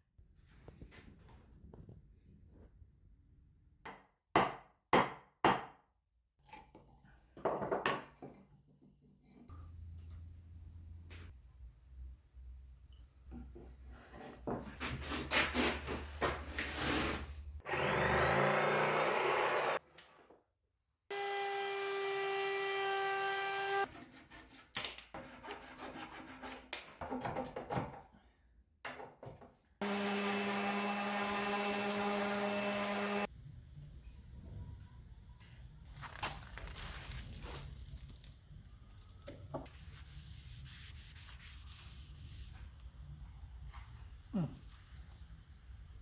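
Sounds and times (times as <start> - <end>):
wood sawn by hand: 14.1 - 19.8, 29.8 - 33.3
power tools running: 17.6 - 19.8, 29.8 - 33.3.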